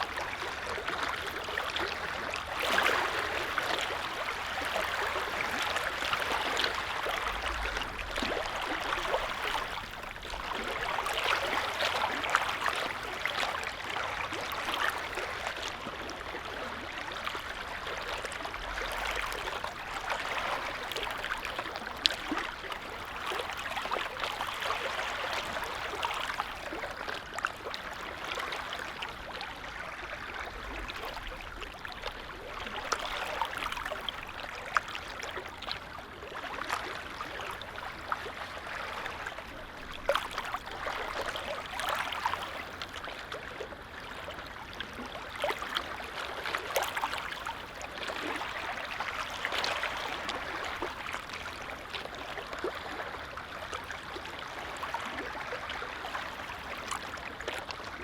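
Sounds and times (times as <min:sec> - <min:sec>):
small waves lapping: 0:00.0 - 0:58.0.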